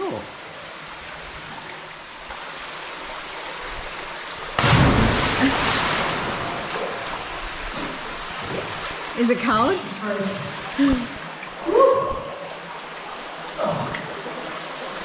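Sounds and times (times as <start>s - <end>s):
water churning: 0.0s - 15.0s
loud splash into water: 4.6s - 8.8s.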